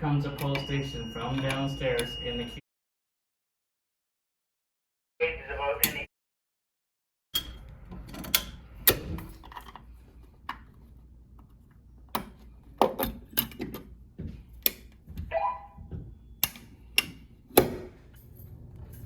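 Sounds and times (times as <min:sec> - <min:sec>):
hardware clicks and knocks: 0:12.0 - 0:18.5.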